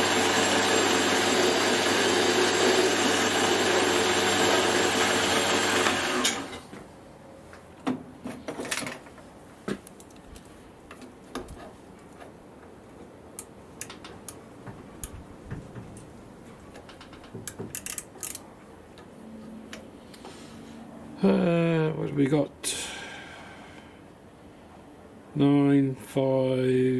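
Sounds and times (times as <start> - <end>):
metal lathe winding down: 0.0 - 6.6
metallic clicks and clunks: 13.4 - 14.4, 16.7 - 18.4.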